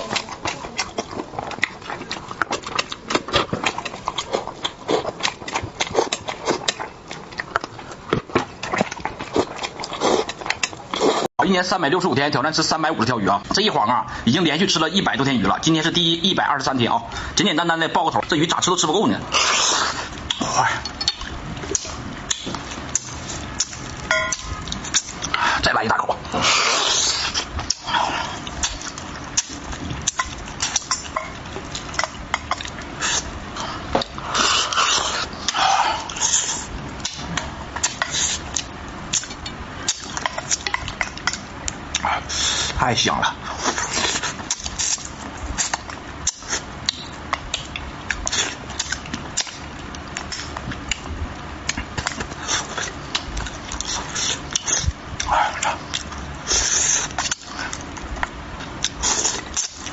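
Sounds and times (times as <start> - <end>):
person chewing wetly: 0.0 - 11.3, 18.2 - 59.9
lip smacks: 34.0 - 42.8, 43.8 - 59.9.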